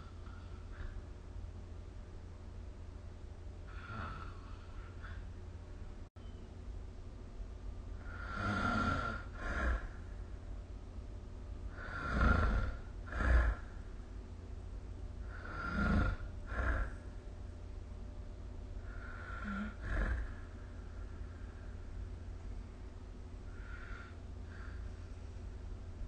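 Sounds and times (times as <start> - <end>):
steady low hum: 0.0 - 26.0
person snoring: 3.7 - 5.2, 8.0 - 10.0, 11.7 - 13.7, 15.2 - 17.0, 18.8 - 20.5.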